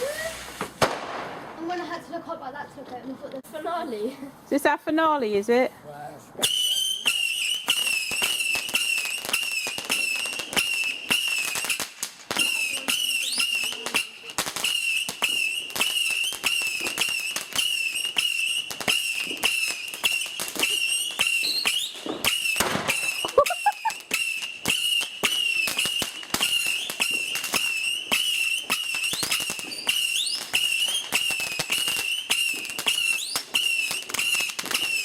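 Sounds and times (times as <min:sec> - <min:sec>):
warbling high whistle: 0:00.0 - 0:00.5
short rising whistles: 0:00.0 - 0:00.6
crackle of firework bursts: 0:00.0 - 0:02.0, 0:06.4 - 0:35.0
firework bang: 0:00.0 - 0:02.0, 0:18.2 - 0:35.0.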